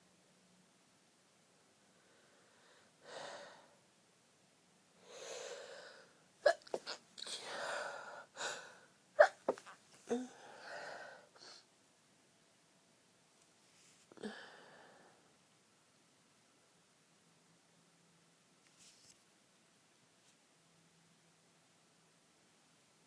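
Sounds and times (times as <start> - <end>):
woman gasping breaths: 2.1 - 3.8, 5.0 - 6.2, 7.3 - 11.7, 14.2 - 15.2
woman sneezing stifled sneezes: 6.4 - 7.7, 9.2 - 10.3.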